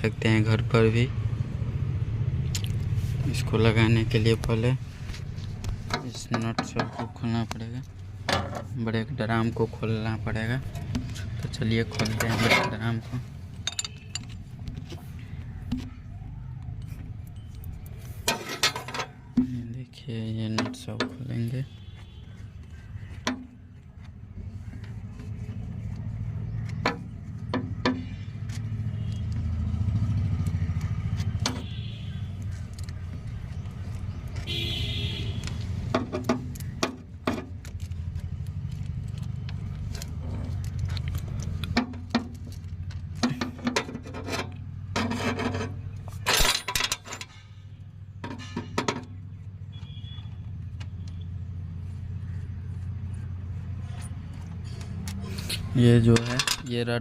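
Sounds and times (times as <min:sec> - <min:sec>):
tools clattering: 0:05.9 - 0:07.4, 0:08.2 - 0:08.8, 0:10.7 - 0:15.0, 0:18.2 - 0:19.6, 0:41.4 - 0:47.6, 0:48.2 - 0:49.2, 0:56.0 - 0:56.9
spanner clicking and scraping on nuts: 0:10.7 - 0:15.0, 0:39.3 - 0:47.6, 0:56.0 - 0:56.9.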